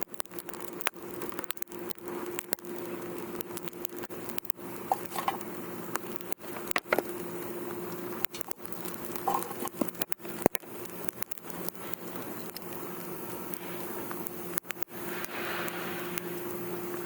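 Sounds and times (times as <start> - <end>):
wood fire crackling and popping: 0.0 - 17.0.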